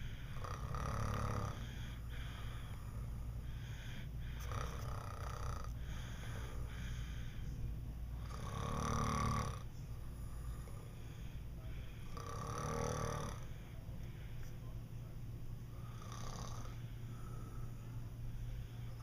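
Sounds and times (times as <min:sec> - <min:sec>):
person snoring: 0:00.0 - 0:07.4, 0:08.2 - 0:13.6, 0:15.8 - 0:17.7.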